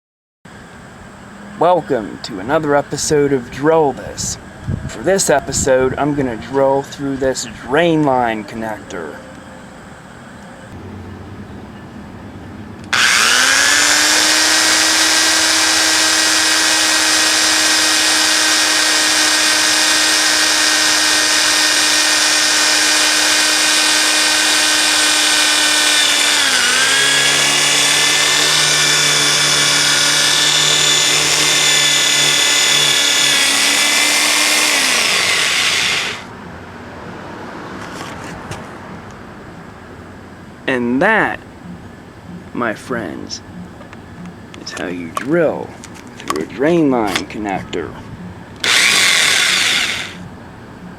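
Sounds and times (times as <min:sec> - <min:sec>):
power drill whining: 0:12.9 - 0:36.3, 0:48.6 - 0:50.2.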